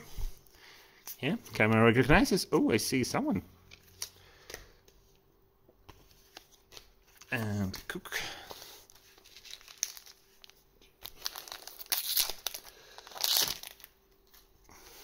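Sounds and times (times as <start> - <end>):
wrapper crinkling and tearing: 8.9 - 14.5
wrapper rustling rips: 9.0 - 14.4.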